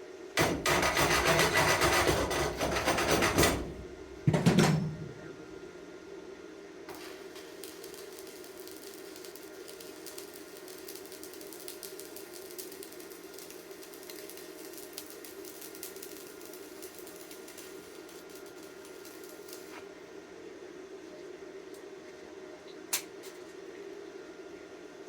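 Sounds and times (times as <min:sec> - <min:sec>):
welding arc crackling: 0:06.9 - 0:19.9.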